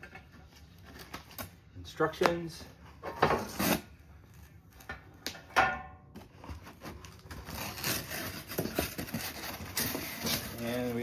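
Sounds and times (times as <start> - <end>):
rustling and shuffling packing: 6.1 - 11.0.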